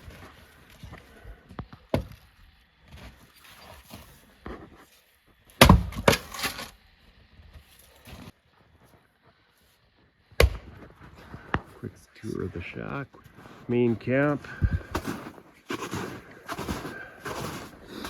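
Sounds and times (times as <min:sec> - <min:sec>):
axe chopping firewood: 0:01.9 - 0:02.3, 0:05.6 - 0:06.8, 0:10.4 - 0:10.9, 0:14.6 - 0:17.7.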